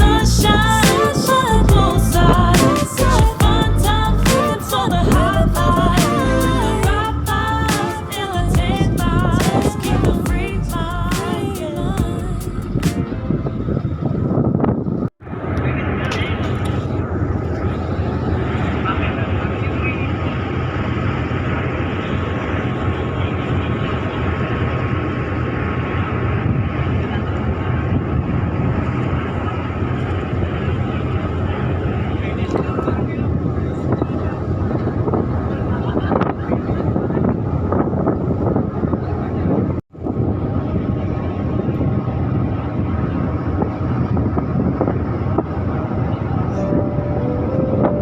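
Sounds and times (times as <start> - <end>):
ship engines rumbling: 0.0 - 14.1.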